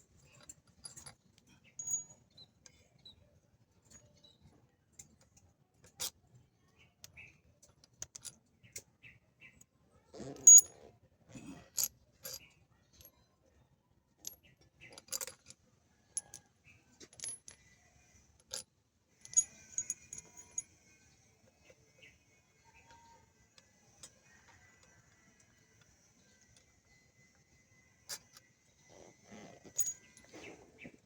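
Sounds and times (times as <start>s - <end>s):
metallic clinks and taps: 1.8s - 2.4s, 19.2s - 21.0s, 29.3s - 30.6s.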